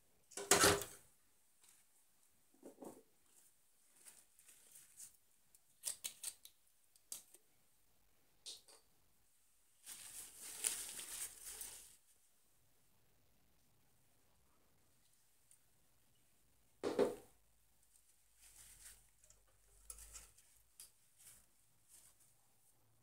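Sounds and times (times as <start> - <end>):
scraping rustle: 9.8 - 12.0, 18.4 - 22.3.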